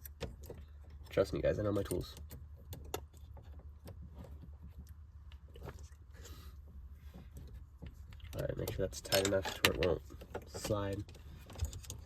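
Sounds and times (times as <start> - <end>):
low steady hum: 0.0 - 12.0
allen key clicks and scrapes: 7.3 - 12.0.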